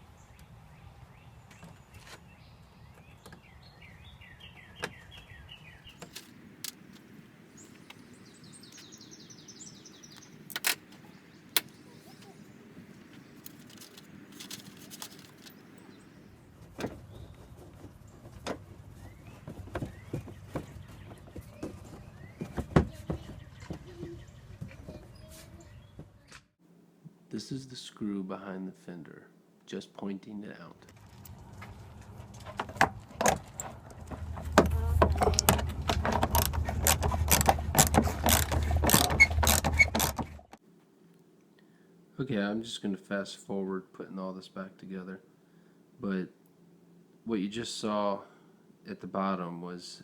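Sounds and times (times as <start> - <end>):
low steady background noise: 0.0 - 50.0
tools clicking and knocking on plastic: 6.0 - 7.0, 10.5 - 11.0.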